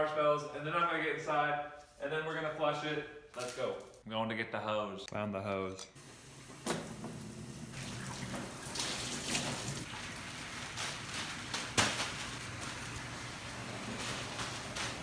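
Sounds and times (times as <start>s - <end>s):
hose water splashing into tub: 6.0s - 15.0s.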